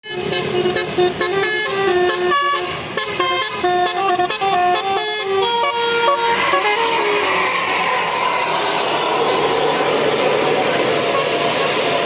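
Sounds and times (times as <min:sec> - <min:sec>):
bus horn playing a melody: 0:00.0 - 0:07.6.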